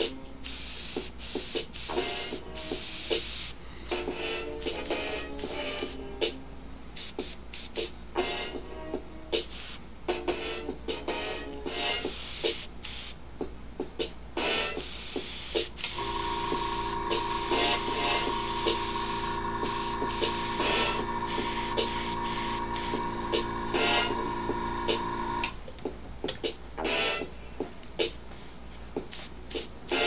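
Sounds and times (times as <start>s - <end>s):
airbrush spraying hiss: 0.4s - 3.6s, 7.0s - 7.9s, 9.4s - 9.8s, 11.9s - 13.2s, 14.8s - 25.4s, 29.1s - 30.0s
music with held tones: 1.9s - 6.8s, 8.2s - 9.5s, 10.1s - 12.6s, 13.8s - 25.6s.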